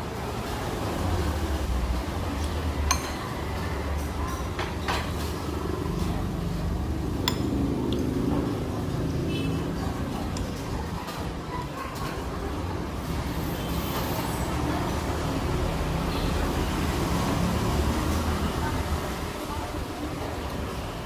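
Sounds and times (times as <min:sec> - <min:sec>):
low rumble of vehicle engines: 0:00.0 - 0:11.5, 0:12.2 - 0:21.0
spoon clinking against a bowl: 0:02.9 - 0:03.4, 0:07.2 - 0:08.1.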